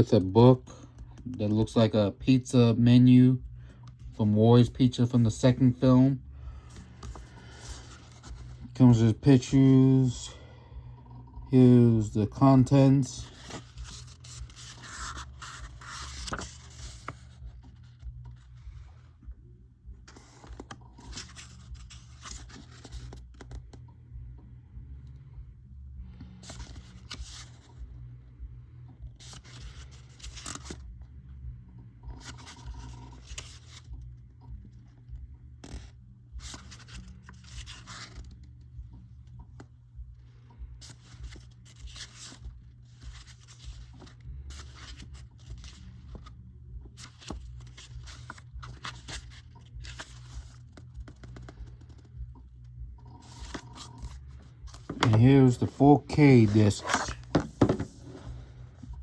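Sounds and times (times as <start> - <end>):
low steady hum: 0.0 - 59.0
paper and cardboard rustling: 12.4 - 18.5, 20.1 - 23.6, 47.0 - 52.0, 53.2 - 58.5.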